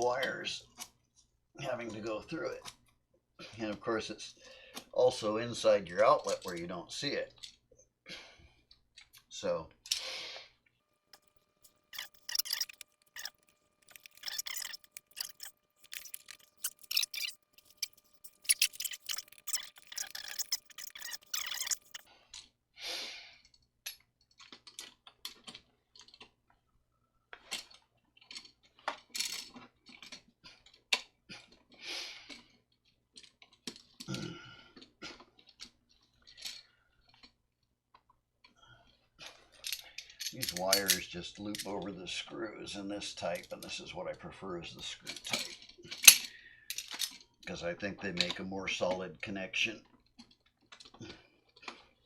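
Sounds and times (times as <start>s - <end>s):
wires scraping: 10.8s - 22.1s.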